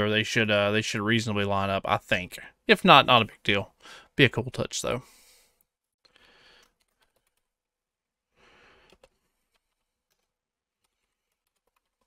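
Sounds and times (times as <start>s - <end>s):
computer mouse clicks: 8.8s - 12.0s.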